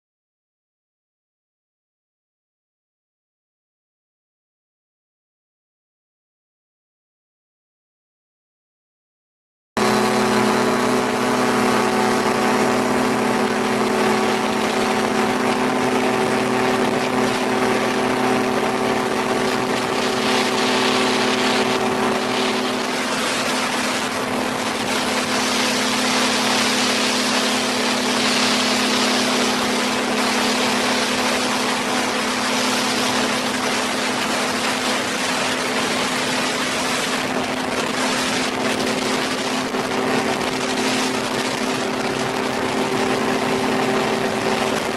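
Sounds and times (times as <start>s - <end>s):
two-stroke engine running: 9.8s - 44.9s.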